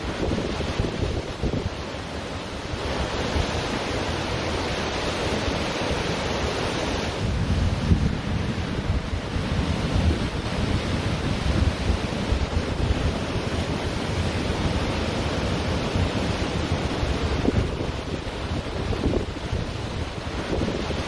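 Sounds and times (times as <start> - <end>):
wind buffeting microphone: 0.0 - 5.7, 6.9 - 21.0
ocean surf washing onto beach: 0.0 - 21.0.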